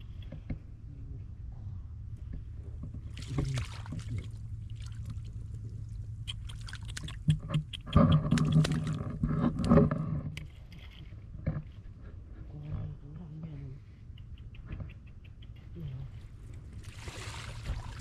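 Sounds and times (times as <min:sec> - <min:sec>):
water sloshing and splashing: 0:02.9 - 0:09.8, 0:16.7 - 0:18.0.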